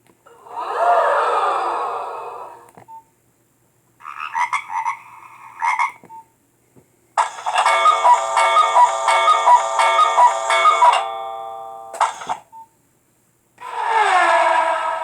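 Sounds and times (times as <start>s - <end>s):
phone ringtones: 7.2s - 12.5s.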